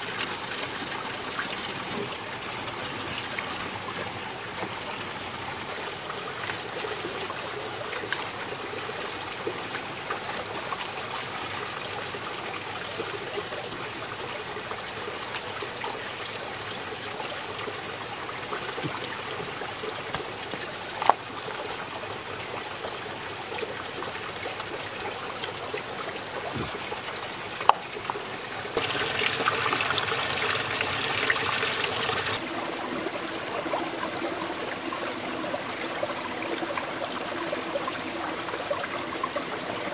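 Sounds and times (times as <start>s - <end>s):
water trickling: 0.0s - 39.9s
splashing rush of water: 23.6s - 39.9s.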